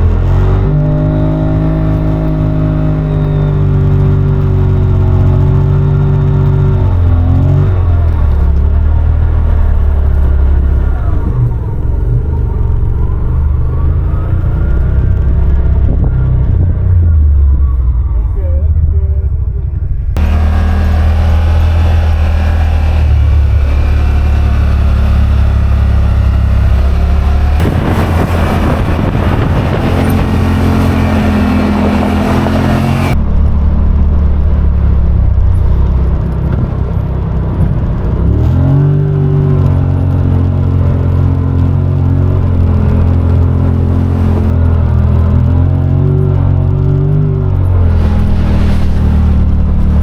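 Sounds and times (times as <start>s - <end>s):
utility vehicle engine running: 0.0s - 50.0s
rushing noise: 19.8s - 35.9s, 47.7s - 50.0s.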